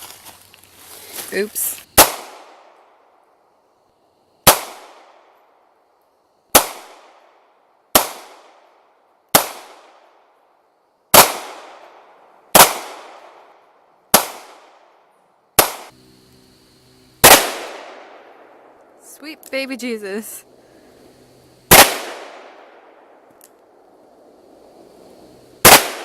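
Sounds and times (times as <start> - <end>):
gunshots with echo: 25.6 - 26.0.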